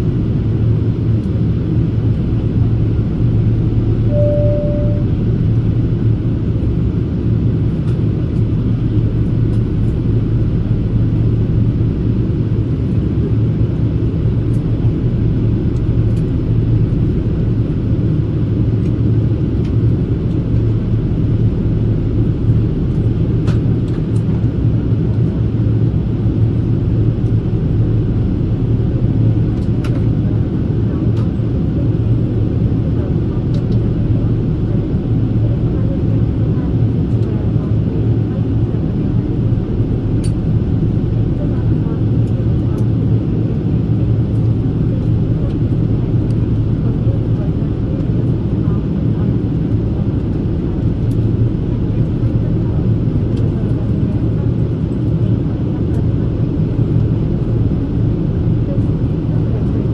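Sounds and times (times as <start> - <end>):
steady hum: 0.0 - 31.0
airplane cabin engine drone: 0.0 - 59.9.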